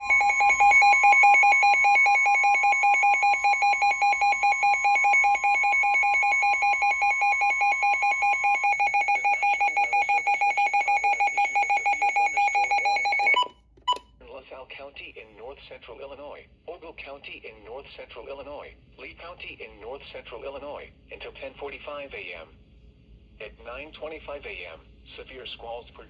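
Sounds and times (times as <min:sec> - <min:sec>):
two-tone alert alarm: 0:00.0 - 0:14.0.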